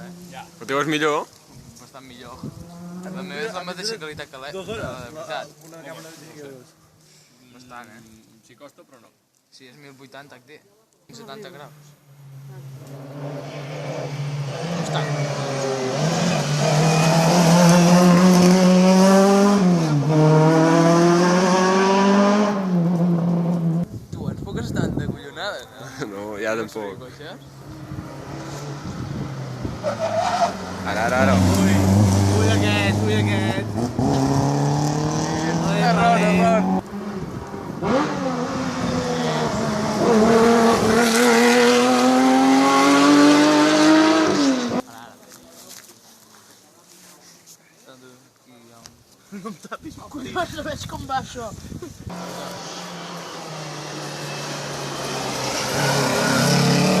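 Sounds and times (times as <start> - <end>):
rally car engine revving hard: 12.9 - 23.9, 27.8 - 44.8, 52.1 - 57.0.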